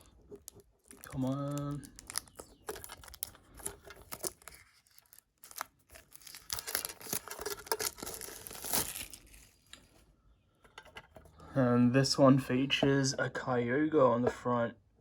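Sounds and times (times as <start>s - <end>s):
plastic wrap crinkling: 0.0s - 10.0s.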